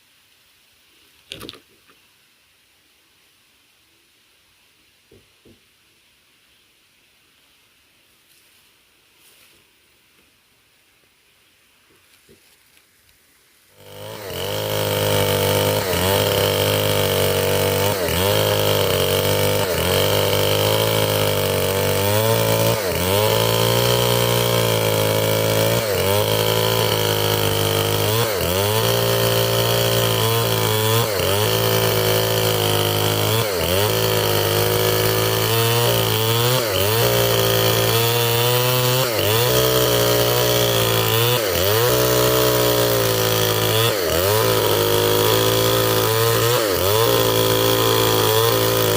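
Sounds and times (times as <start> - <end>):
chainsaw cutting wood: 13.7 - 48.9.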